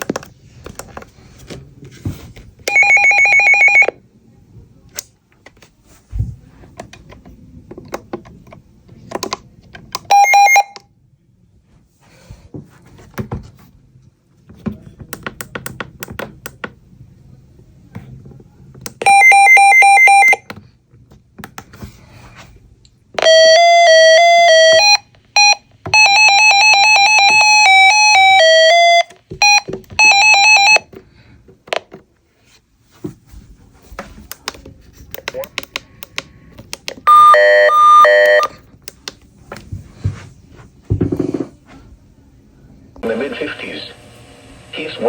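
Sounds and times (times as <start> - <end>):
weather radio alarm tones: 23.2 - 30.8, 37.1 - 38.5, 43.0 - 45.0.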